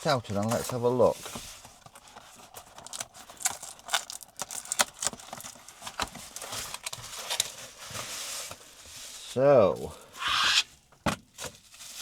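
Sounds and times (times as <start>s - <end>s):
packaging rustle: 0.4s - 9.1s
packaging crinkling: 1.8s - 8.7s.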